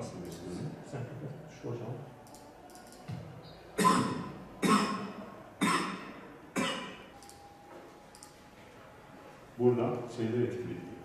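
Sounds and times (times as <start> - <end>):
person coughing: 3.8 - 7.0.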